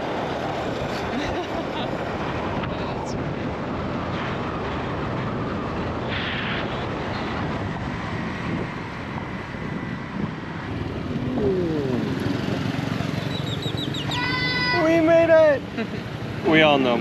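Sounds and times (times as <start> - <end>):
road and wind noise: 0.0 - 17.0
motorbike engine: 7.2 - 17.0.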